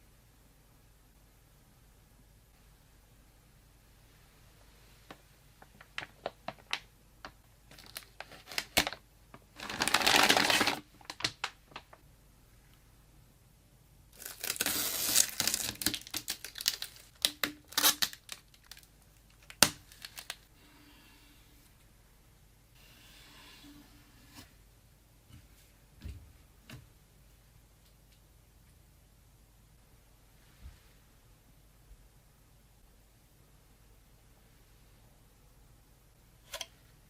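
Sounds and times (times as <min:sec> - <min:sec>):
packaging crinkling: 0:05.6 - 0:12.0, 0:14.2 - 0:20.5.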